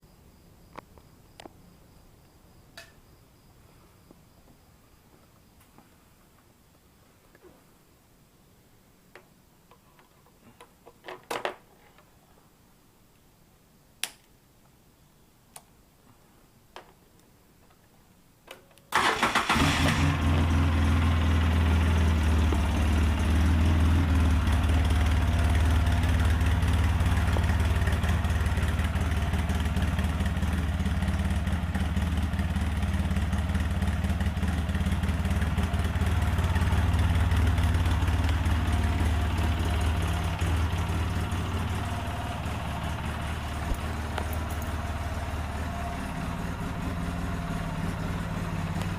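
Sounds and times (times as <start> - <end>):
atv engine starting and idling: 18.9 - 48.9.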